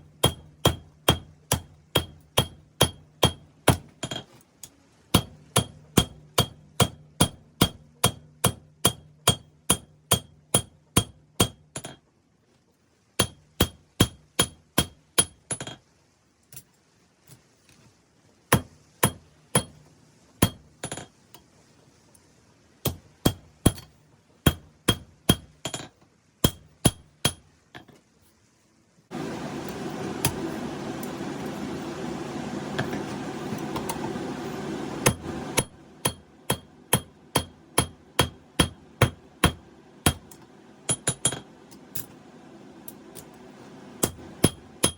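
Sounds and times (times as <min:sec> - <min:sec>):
hammer striking anvil: 0:00.2 - 0:04.2, 0:05.2 - 0:12.0, 0:35.0 - 0:40.2, 0:40.9 - 0:41.4, 0:44.0 - 0:44.9.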